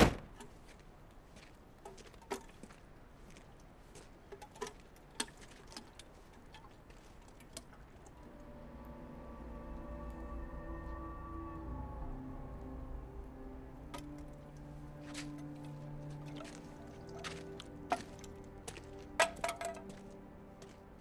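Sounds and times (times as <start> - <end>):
low sustained tones: 8.1 - 21.0.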